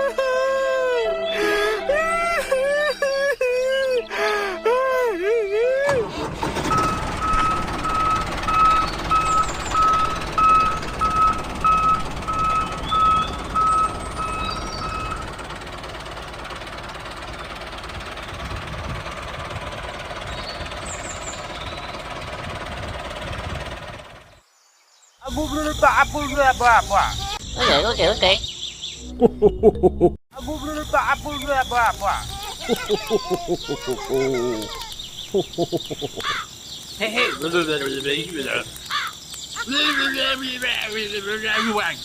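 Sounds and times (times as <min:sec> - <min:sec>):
motor noise: 0:05.9 - 0:24.4, 0:30.5 - 0:42.0
reversing alarm beeping: 0:06.6 - 0:15.4.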